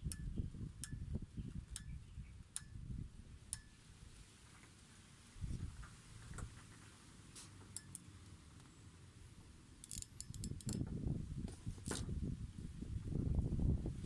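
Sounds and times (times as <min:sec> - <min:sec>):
small sharp clicks: 0:00.0 - 0:01.0, 0:01.7 - 0:02.8, 0:07.4 - 0:08.1, 0:09.8 - 0:10.9.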